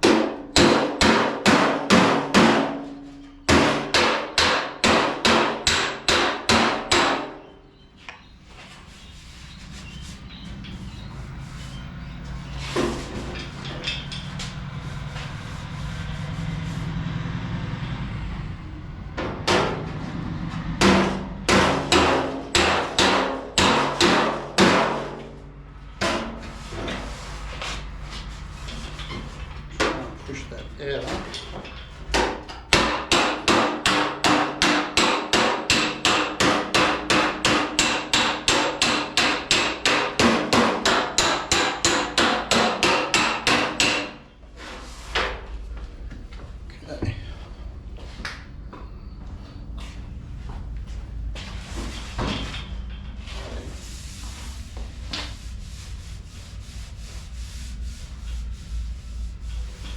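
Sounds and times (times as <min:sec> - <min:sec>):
hammer striking sheet metal: 0:00.0 - 0:07.5, 0:19.2 - 0:27.1, 0:32.1 - 0:44.4
steady low hum: 0:00.0 - 0:59.9.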